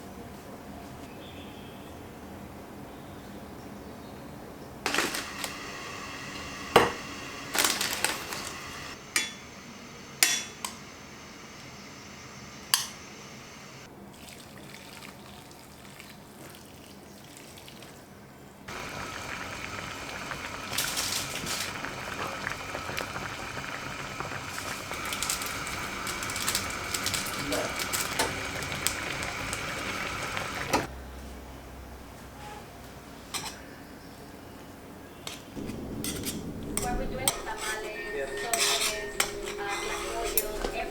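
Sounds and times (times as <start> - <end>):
utensils clinking against dishes: 4.9 - 5.6, 6.8 - 9.4, 36.8 - 40.9
liquid bubbling in a pot: 18.7 - 30.9.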